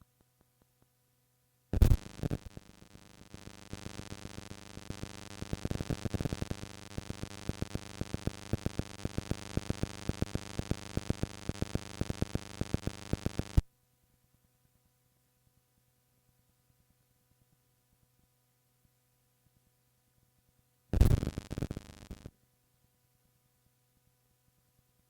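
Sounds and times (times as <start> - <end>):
tape hiss and hum: 1.6 - 13.7, 20.9 - 22.4.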